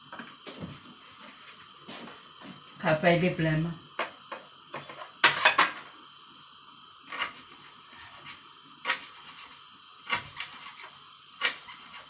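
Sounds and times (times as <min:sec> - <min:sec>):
kitchen knocks and clicks: 0:04.0 - 0:05.9.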